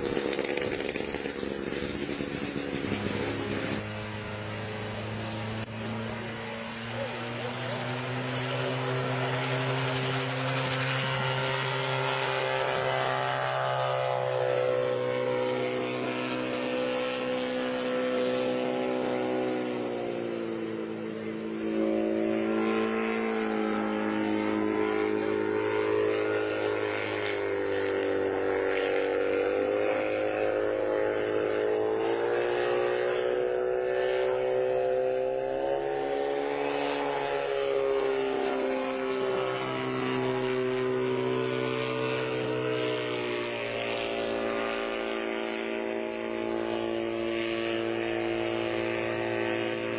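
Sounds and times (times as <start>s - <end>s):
helicopter engine running: 0.0s - 49.9s.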